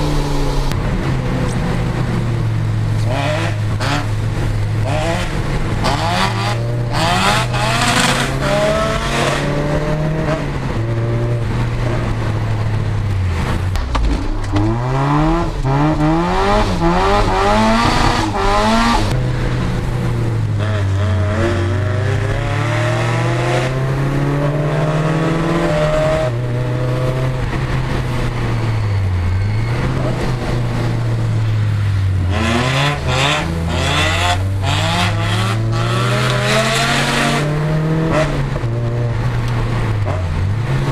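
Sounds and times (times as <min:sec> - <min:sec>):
tyres squealing: 0:00.0 - 0:00.7, 0:13.8 - 0:19.1
car engine revving hard: 0:00.0 - 0:00.8, 0:13.8 - 0:19.2.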